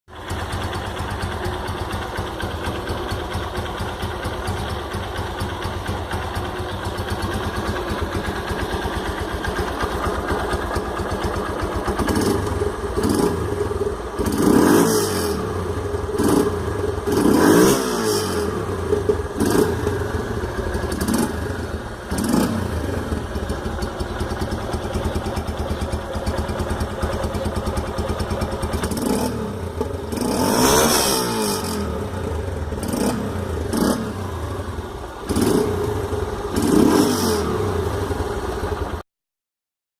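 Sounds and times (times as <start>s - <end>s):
motorcycle engine idling: 0.1s - 39.0s
motorcycle throttle blips: 18.7s - 39.0s.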